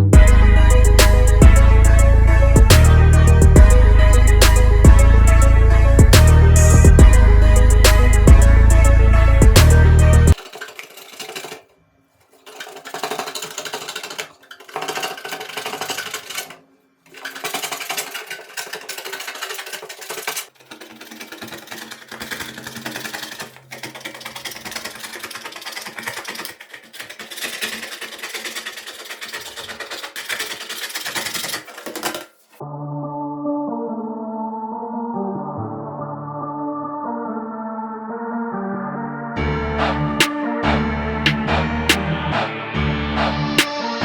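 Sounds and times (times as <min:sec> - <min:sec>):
small machine rapid repeating action: 0:10.4 - 0:11.7, 0:12.3 - 0:32.6.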